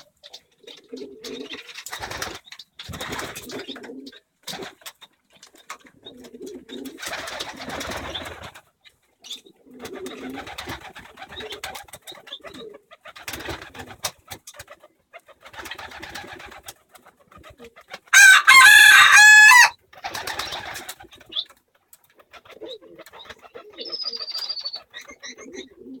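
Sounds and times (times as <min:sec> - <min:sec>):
soft raspy bird sounds: 0:20.4 - 0:26.0.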